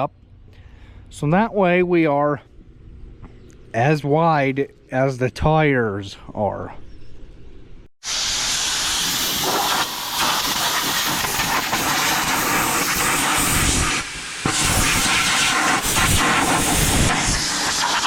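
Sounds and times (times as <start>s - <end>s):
blower rushing air: 8.0s - 18.0s.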